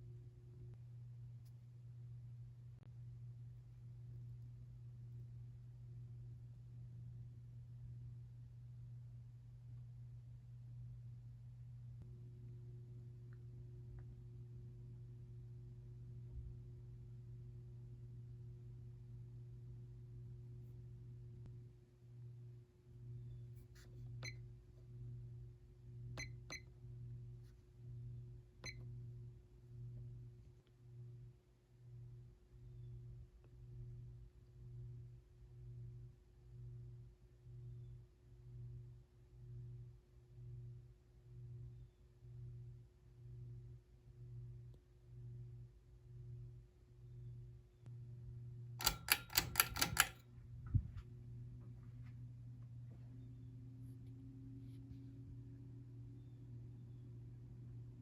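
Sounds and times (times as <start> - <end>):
light clicks: 48.8 - 50.2.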